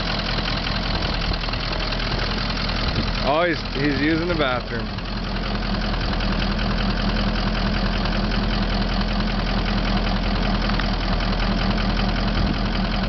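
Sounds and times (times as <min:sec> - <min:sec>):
vehicle engine idling: 0:00.0 - 0:13.0.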